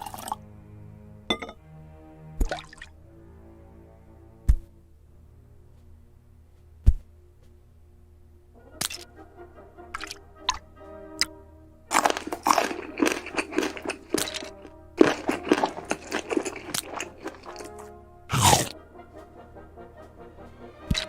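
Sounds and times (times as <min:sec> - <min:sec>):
soft background music: 0:00.0 - 0:21.0
crisp crunching and crackling: 0:11.9 - 0:18.8.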